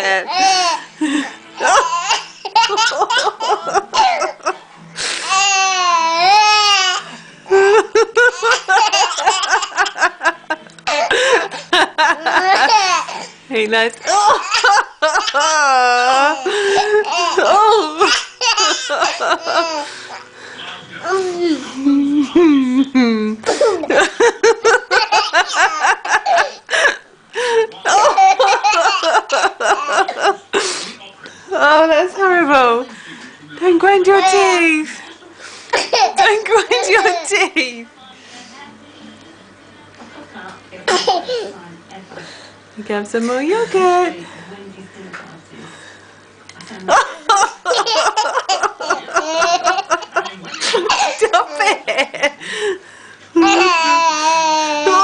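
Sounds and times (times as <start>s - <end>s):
baby laughing: 0.3s - 0.8s, 1.6s - 4.5s, 7.6s - 10.1s, 10.8s - 11.6s, 12.2s - 13.3s, 14.0s - 20.2s, 24.6s - 26.8s, 27.8s - 30.4s, 35.8s - 37.3s, 47.3s - 51.9s, 53.4s - 55.0s.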